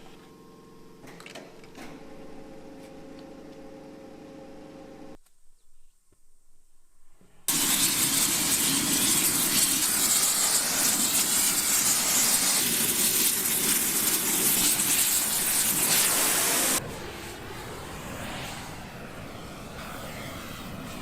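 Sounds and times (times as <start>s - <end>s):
loud hissing rush of air: 7.5s - 21.0s.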